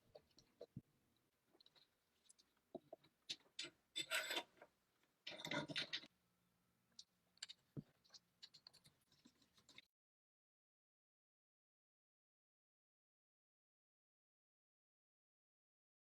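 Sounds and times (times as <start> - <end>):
metal parts scraping: 4.0 - 4.6.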